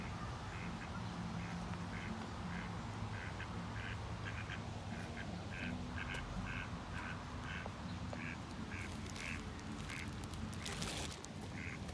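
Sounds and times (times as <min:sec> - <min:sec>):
ducks quacking: 0:00.5 - 0:11.9.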